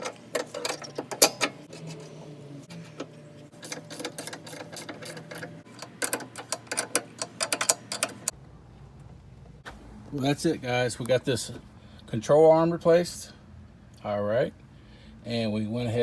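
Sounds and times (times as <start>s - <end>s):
ratchet wrench clicking: 3.6s - 8.3s.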